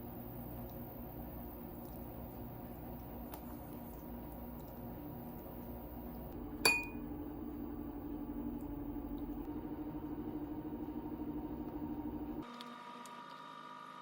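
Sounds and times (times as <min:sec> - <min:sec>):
sharp ringing clink: 0:06.7 - 0:07.0.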